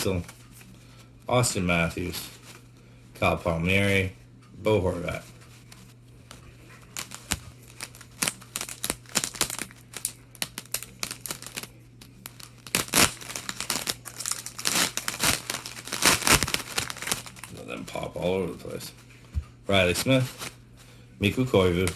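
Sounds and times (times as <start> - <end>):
plastic wrapper crinkling: 5.1 - 18.3
wrapper tearing: 6.8 - 17.7.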